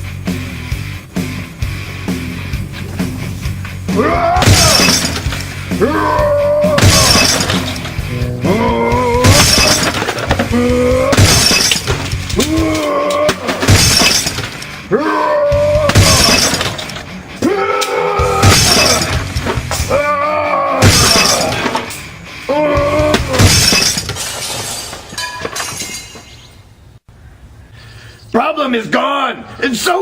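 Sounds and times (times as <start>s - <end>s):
music: 0.0s - 24.3s
computer smashing crashes: 4.4s - 5.6s, 6.8s - 8.0s, 9.2s - 14.6s, 15.9s - 17.0s.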